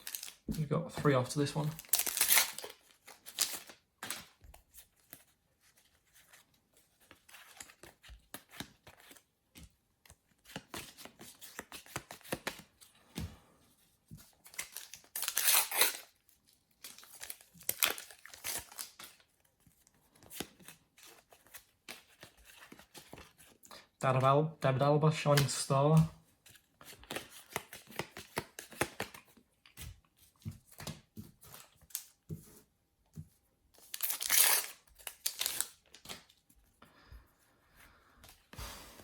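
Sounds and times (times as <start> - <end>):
card packets tearing open: 0.0 - 0.4, 1.3 - 4.3, 14.4 - 16.2, 16.8 - 19.2, 33.8 - 36.4
foil wrappers crinkling: 0.0 - 0.4, 1.0 - 3.8, 33.9 - 36.2
cards being handled: 0.0 - 24.3, 25.2 - 36.7.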